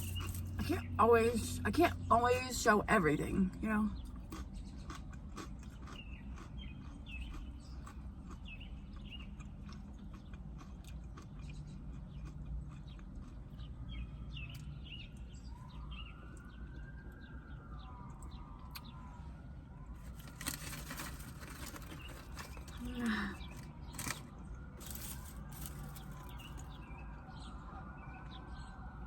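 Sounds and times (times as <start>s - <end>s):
small birds chirping: 0.0s - 19.2s, 20.0s - 29.0s
faint siren wailing: 13.6s - 29.0s.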